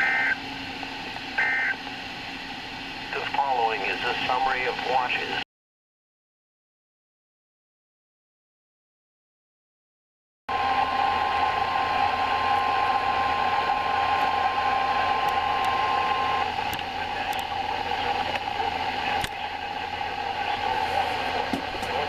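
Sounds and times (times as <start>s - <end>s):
steady warning tone: 0.0s - 0.6s, 1.4s - 1.9s, 10.5s - 22.0s
radio static hiss: 0.0s - 1.8s, 3.0s - 5.4s, 11.4s - 22.0s.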